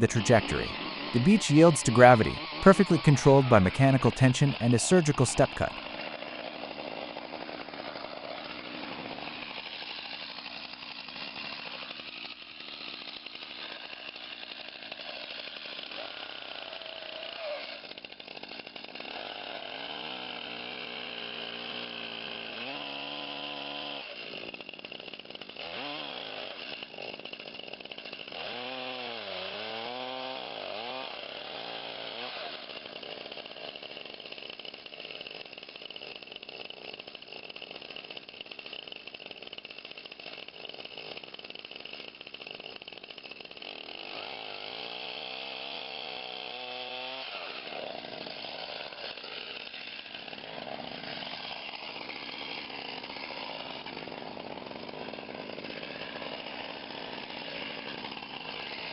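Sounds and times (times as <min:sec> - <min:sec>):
short pitched sounds: 0:00.0 - 0:05.8
chainsaw running: 0:00.0 - 0:58.9.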